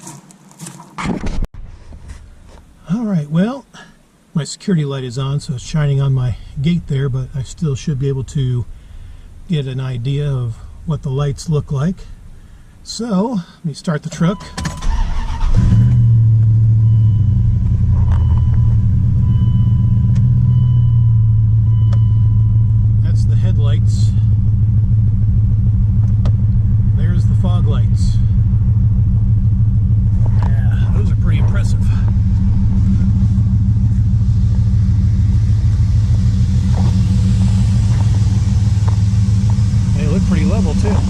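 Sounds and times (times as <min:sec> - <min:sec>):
pickup truck engine idling: 0:05.5 - 0:12.8, 0:20.9 - 0:41.0.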